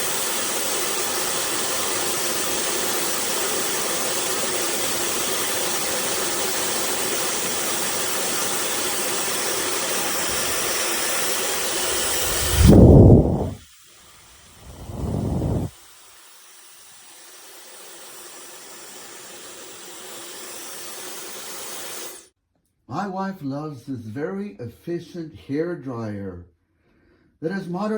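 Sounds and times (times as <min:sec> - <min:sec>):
hair dryer whooshing: 0:09.0 - 0:13.6, 0:14.5 - 0:15.7
low rumbling blasts: 0:12.0 - 0:13.6, 0:14.6 - 0:15.7.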